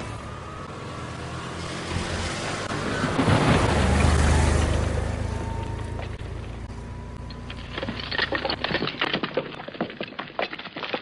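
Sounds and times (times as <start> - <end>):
debris cracking and clattering: 7.3 - 11.0.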